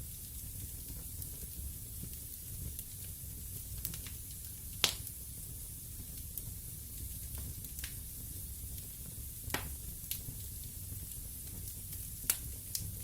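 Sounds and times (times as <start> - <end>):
fire crackles and pops: 0.0 - 13.0
wood fire rumbling and hissing: 0.0 - 13.0.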